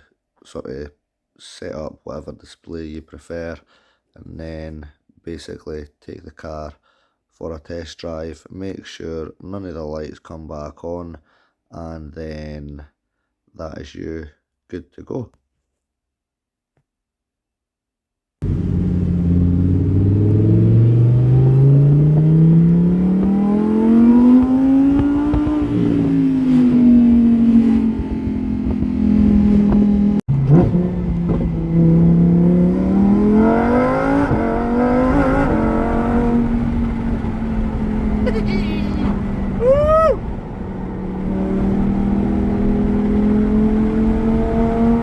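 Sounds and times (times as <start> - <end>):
sports car engine accelerating: 18.4 - 45.0.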